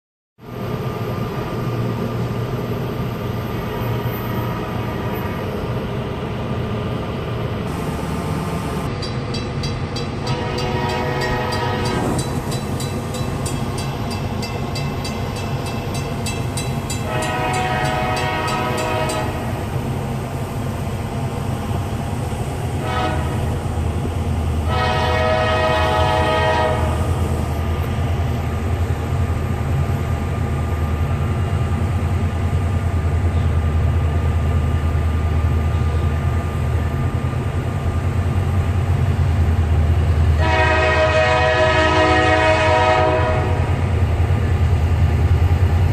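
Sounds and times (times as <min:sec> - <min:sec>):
train rumbling past: 0:00.4 - 0:45.9
train horn blasts: 0:10.2 - 0:12.2, 0:17.0 - 0:19.6, 0:22.8 - 0:23.6, 0:24.6 - 0:27.1, 0:40.4 - 0:44.0.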